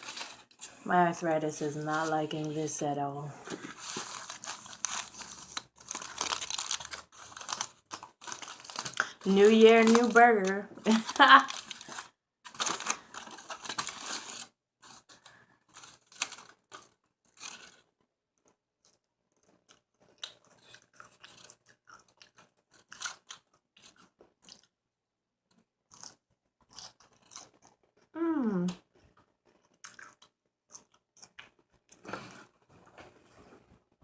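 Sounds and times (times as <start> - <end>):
chewing a burger: 13.0 - 28.2, 28.8 - 32.7.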